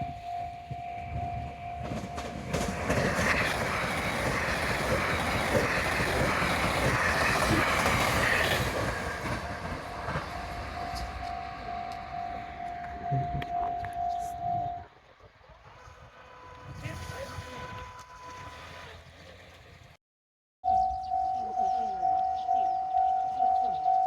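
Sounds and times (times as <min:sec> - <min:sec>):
level crossing electronic bell: 0:00.0 - 0:02.4, 0:10.3 - 0:14.8, 0:20.7 - 0:24.0
electric train passing: 0:00.0 - 0:19.9.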